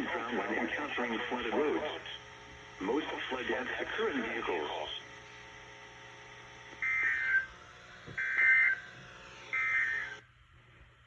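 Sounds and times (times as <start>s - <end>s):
steady broadcast hiss: 0.0s - 7.4s
short digital screeches: 6.8s - 7.6s, 8.2s - 8.8s, 9.5s - 10.2s.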